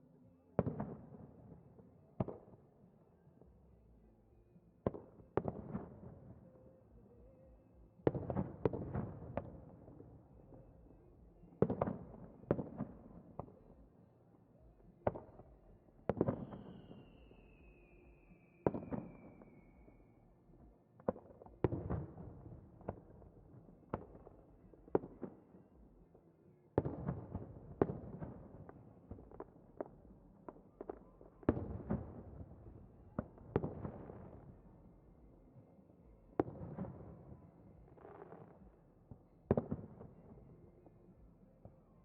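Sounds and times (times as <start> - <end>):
falling firework whistle: 16.3 - 20.2
fireworks booming: 26.8 - 34.6.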